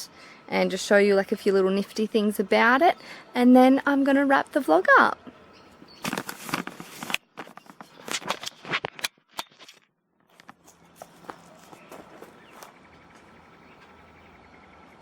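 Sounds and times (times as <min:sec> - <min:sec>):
rustling and clicks of handling: 0:06.0 - 0:12.8.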